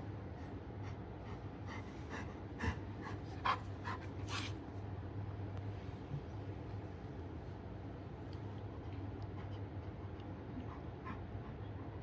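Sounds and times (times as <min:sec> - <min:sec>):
steady low hum: 0:00.0 - 0:12.0
dog making breathy sounds: 0:00.4 - 0:04.6, 0:08.6 - 0:12.0.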